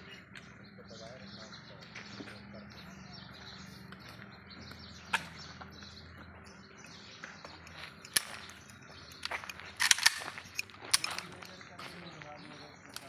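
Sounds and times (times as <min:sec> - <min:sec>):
small birds chirping: 0:00.0 - 0:13.0
sharp clicks: 0:07.6 - 0:11.6.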